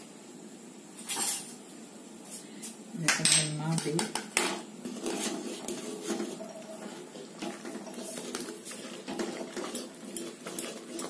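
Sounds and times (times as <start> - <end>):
ladle stirring thick dough: 3.6 - 11.0
ladle scraping and knocking pan: 3.8 - 11.0.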